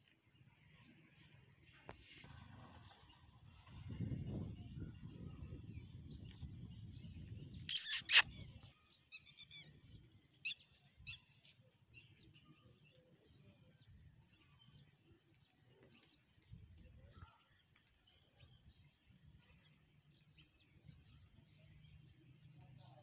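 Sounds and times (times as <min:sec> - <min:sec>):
chicks cheeping: 0:07.7 - 0:08.2.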